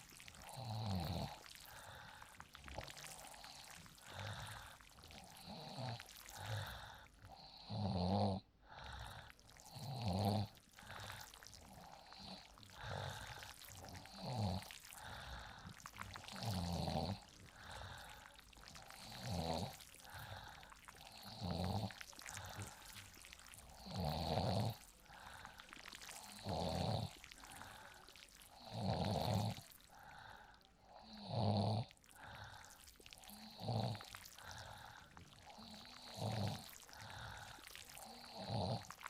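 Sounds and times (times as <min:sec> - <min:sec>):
soft breathing: 0:00.0 - 0:07.7, 0:08.6 - 0:31.2, 0:31.8 - 0:39.0
person snoring: 0:00.0 - 0:39.0.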